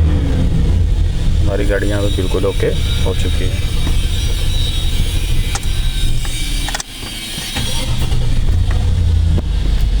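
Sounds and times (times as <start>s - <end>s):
pickup engine rumbling: 0.0s - 10.0s.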